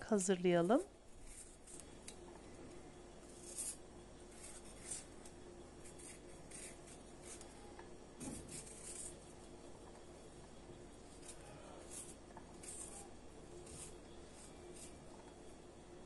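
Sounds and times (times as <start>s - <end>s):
scraping strokes peeling ginger: 1.1s - 2.2s, 3.2s - 7.7s, 8.4s - 9.4s, 11.1s - 15.1s.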